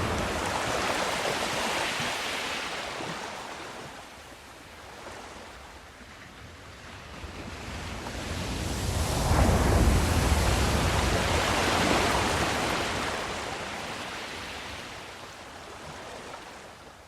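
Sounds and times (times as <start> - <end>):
ocean wave breaking: 0.0 - 4.2, 7.0 - 15.2.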